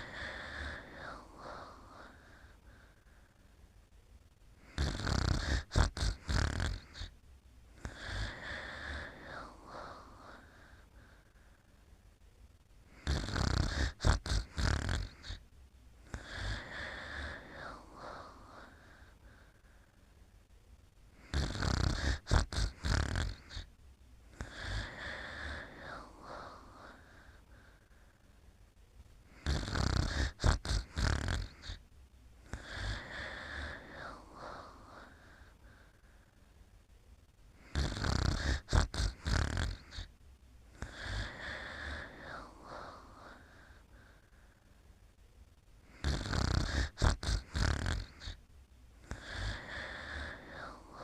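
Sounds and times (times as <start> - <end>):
person snoring: 0.0 - 3.0, 4.6 - 7.1, 7.7 - 11.3, 12.9 - 15.4, 16.0 - 19.8, 21.1 - 23.7, 24.3 - 28.0, 29.2 - 31.8, 32.4 - 36.2, 37.5 - 40.1, 40.7 - 44.5, 45.8 - 48.4, 49.0 - 51.0.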